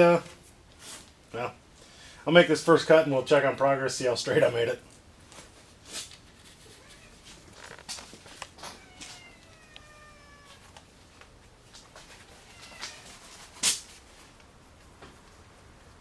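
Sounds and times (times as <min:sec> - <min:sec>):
cat meowing: 0:06.6 - 0:07.4, 0:08.6 - 0:10.8, 0:12.4 - 0:13.3.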